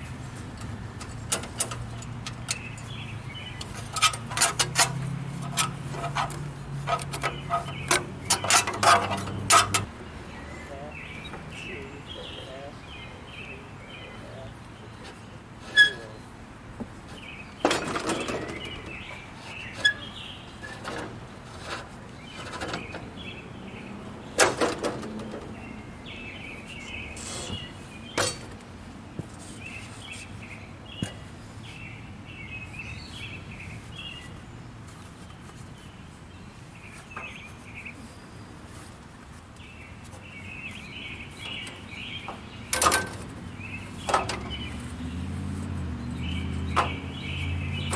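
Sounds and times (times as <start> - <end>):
small birds chirping: 0.0 - 47.9
sharp knocks and clanks: 3.7 - 9.9, 16.8 - 19.0, 27.4 - 28.6, 41.5 - 43.3, 46.6 - 47.1.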